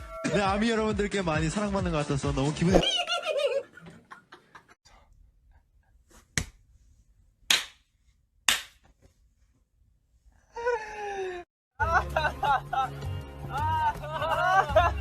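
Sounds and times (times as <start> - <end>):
sharp smacks: 8.5 - 8.9.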